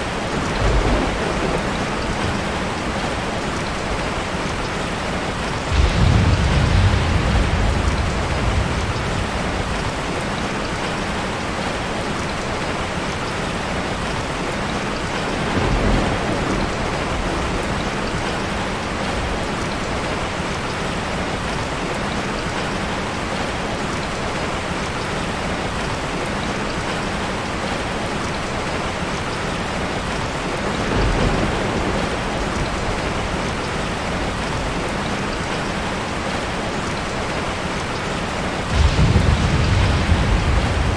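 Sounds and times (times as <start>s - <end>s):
low thunder rumble: 0.0s - 11.5s, 15.3s - 20.2s, 30.6s - 35.0s, 38.6s - 40.9s
rain pouring: 0.0s - 40.9s.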